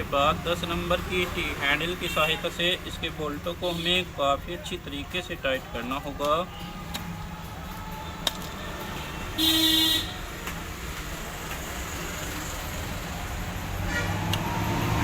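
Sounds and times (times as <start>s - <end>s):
road traffic rumble: 0.0s - 15.0s
vehicle horn honk: 9.0s - 10.2s.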